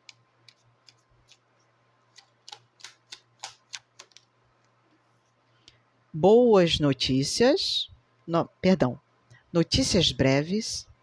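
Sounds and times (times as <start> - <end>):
cards clicking on a table: 2.1 - 4.3.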